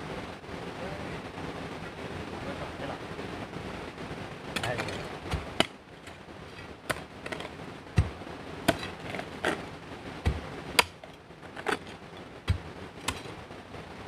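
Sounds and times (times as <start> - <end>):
hard objects knocking and clicking: 4.6 - 9.6, 10.2 - 13.4
dull low thud: 8.0 - 8.9, 10.2 - 10.9.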